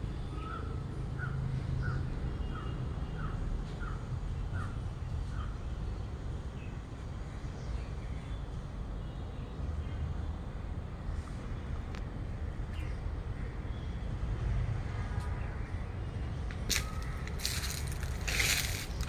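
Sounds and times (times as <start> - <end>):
other birds calling: 16.7 - 19.0.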